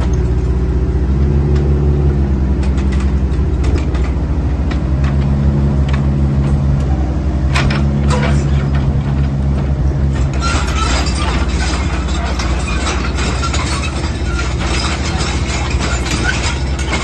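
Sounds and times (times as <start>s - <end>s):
excavator diesel engine running: 0.0s - 17.0s
rattling clatter: 0.0s - 17.0s
sharp metallic clanks: 7.4s - 17.0s.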